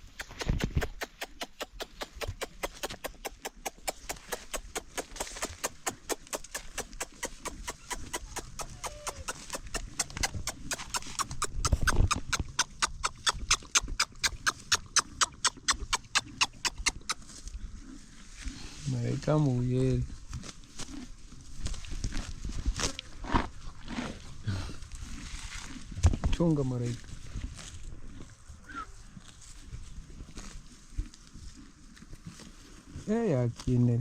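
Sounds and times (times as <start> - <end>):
fast sharp clicks: 0.0 - 17.2.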